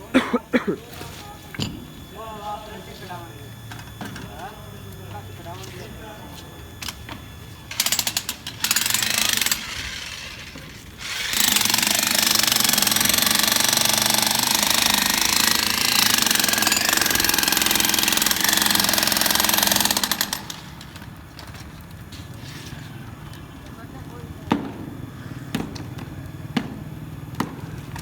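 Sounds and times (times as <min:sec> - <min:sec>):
jackhammer breaking concrete: 0:07.7 - 0:21.0.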